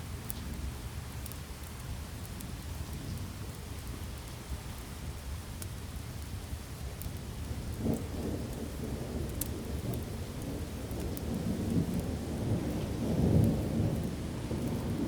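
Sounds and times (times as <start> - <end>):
steady rain: 0.0 - 15.0
rolling thunder: 10.6 - 15.0.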